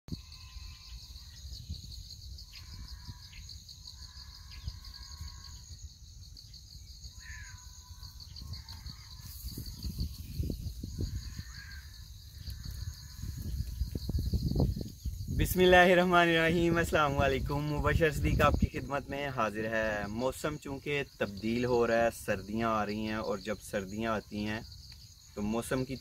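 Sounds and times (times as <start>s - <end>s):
pulsing insect chirr: 0.1s - 26.0s
birds calling: 6.5s - 26.0s.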